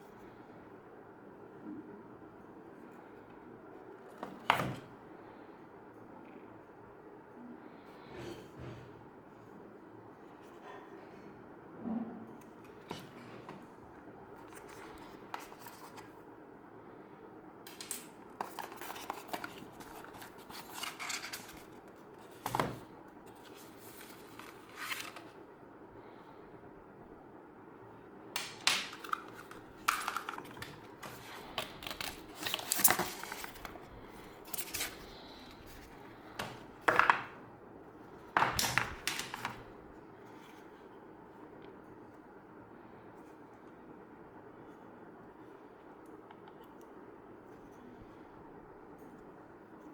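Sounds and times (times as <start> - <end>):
packaging rustling and scraping: 18.0 - 25.4, 28.9 - 36.9.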